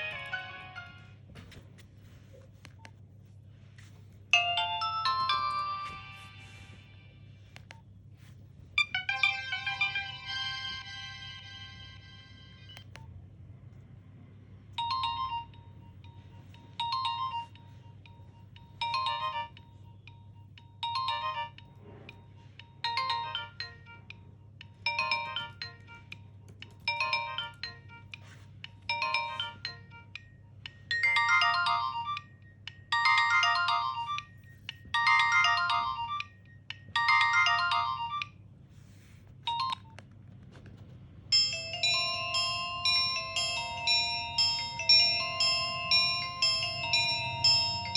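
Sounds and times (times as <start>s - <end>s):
mobile phone ringtone: 4.4s - 6.9s, 8.8s - 12.8s, 14.8s - 21.8s, 22.4s - 38.4s, 39.4s - 39.9s, 41.3s - 47.9s.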